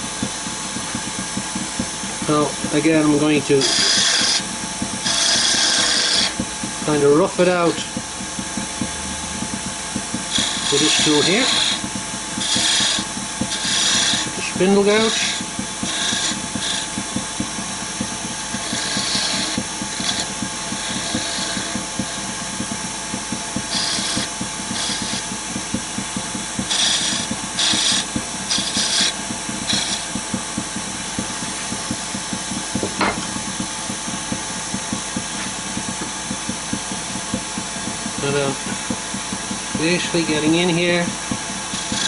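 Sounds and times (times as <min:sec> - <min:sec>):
wood lathe humming: 0:00.0 - 0:42.0
gouge scraping wood shavings: 0:02.8 - 0:06.4, 0:10.3 - 0:11.8, 0:12.4 - 0:16.9, 0:18.5 - 0:22.2, 0:23.7 - 0:25.2, 0:26.7 - 0:30.1.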